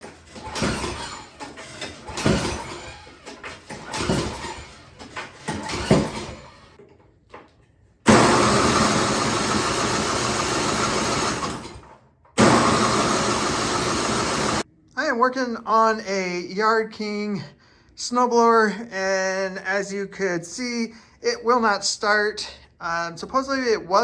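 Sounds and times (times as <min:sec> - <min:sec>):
snowblower engine cranking: 0:00.0 - 0:06.8, 0:08.1 - 0:14.6.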